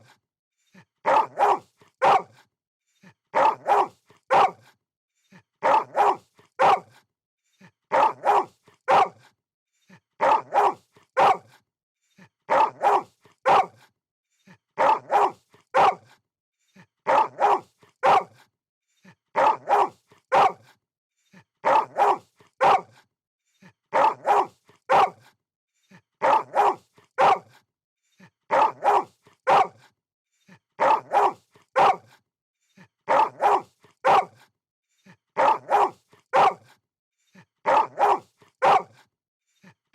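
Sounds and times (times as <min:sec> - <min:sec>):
dog barking: 0:01.0 - 0:02.4, 0:03.3 - 0:04.7, 0:05.6 - 0:07.0, 0:07.9 - 0:09.3, 0:10.2 - 0:11.6, 0:12.5 - 0:13.9, 0:14.8 - 0:16.2, 0:17.0 - 0:18.5, 0:19.4 - 0:20.8, 0:21.6 - 0:23.0, 0:23.9 - 0:25.3, 0:26.2 - 0:27.6, 0:28.5 - 0:29.9, 0:30.8 - 0:32.2, 0:33.1 - 0:34.4, 0:35.4 - 0:36.8, 0:37.6 - 0:39.1.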